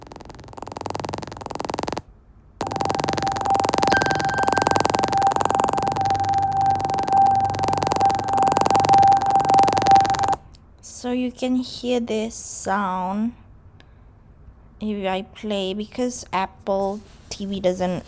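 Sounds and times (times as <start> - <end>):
steady high hum: 2.6 - 10.4
faint tone: 2.6 - 10.5.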